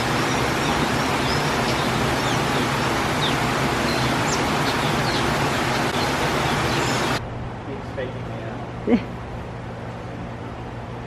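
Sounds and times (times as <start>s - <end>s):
small birds chirping faintly: 0.0s - 7.2s
steady outdoor noise: 0.0s - 11.0s.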